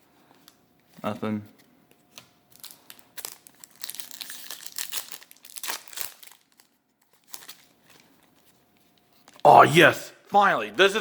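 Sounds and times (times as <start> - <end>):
trading cards and packaging crinkling: 2.1 - 9.4.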